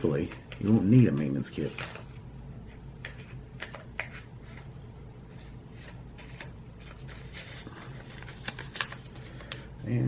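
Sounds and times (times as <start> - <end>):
steady low hum: 0.0 - 10.0
packaging clicks and rustles: 5.8 - 9.7.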